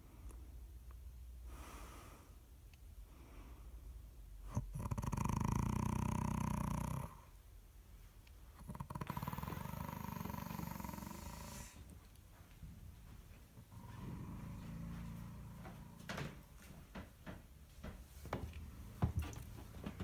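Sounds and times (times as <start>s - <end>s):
person snoring: 4.6s - 7.2s, 8.7s - 11.8s.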